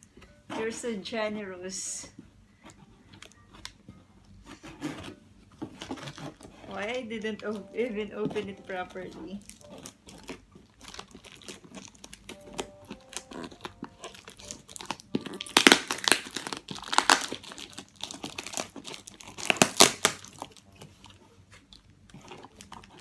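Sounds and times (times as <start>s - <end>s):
packaging crinkling and tearing: 4.5s - 7.6s, 9.3s - 23.0s.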